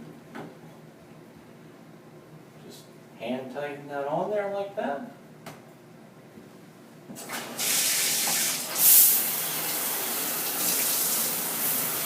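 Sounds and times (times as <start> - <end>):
shower head spraying water: 7.2 - 12.0.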